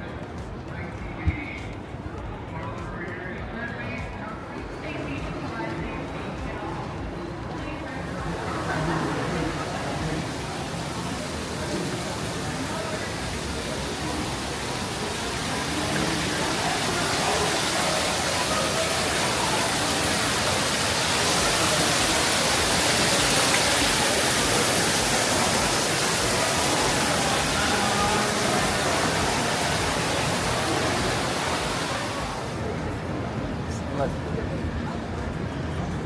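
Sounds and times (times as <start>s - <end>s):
faint voices: 0.0s - 36.0s
rush of falling water: 5.2s - 33.4s.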